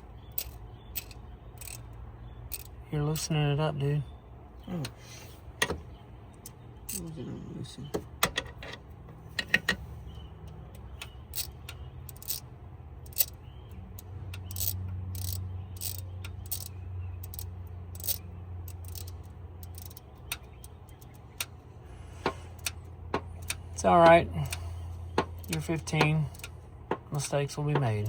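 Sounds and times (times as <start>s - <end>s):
low steady hum: 0.0s - 28.0s
hand ratchet clicking: 0.3s - 1.9s, 2.5s - 2.8s, 10.4s - 12.4s, 13.0s - 21.6s, 22.2s - 27.0s.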